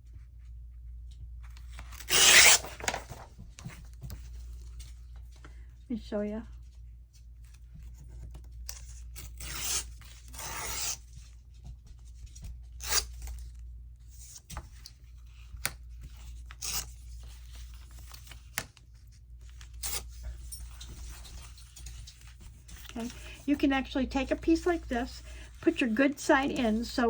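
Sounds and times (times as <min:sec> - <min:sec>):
paper rustling: 0:01.6 - 0:05.7, 0:14.3 - 0:27.0
paper ripping: 0:01.7 - 0:03.2.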